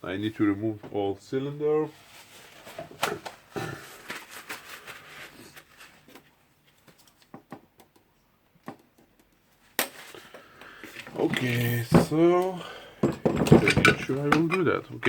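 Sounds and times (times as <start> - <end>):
tools clicking on metal parts: 13.1 - 14.7.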